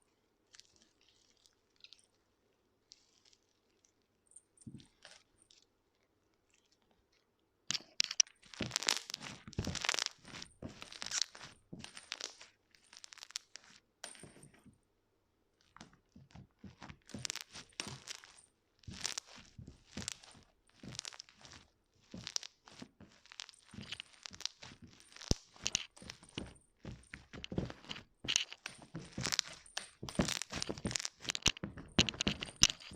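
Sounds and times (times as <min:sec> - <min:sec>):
crunchy slime squishing: 0:08.4 - 0:13.6, 0:17.0 - 0:32.9.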